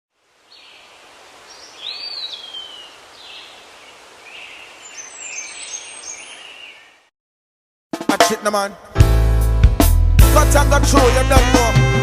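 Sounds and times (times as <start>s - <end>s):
steady outdoor hiss: 0.1s - 7.1s
songbirds calling: 0.4s - 7.1s
high bird twittering: 1.5s - 7.0s.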